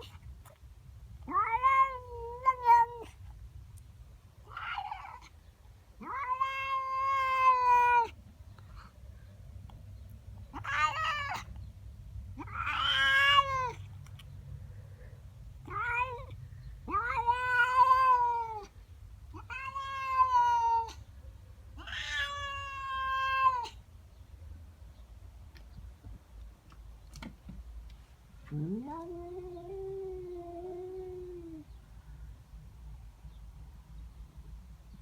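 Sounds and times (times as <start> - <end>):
cat yowling: 1.2 - 3.2, 4.4 - 5.3, 6.0 - 8.2, 10.5 - 11.5, 12.4 - 13.8, 15.6 - 21.0, 21.8 - 23.8, 28.4 - 31.7.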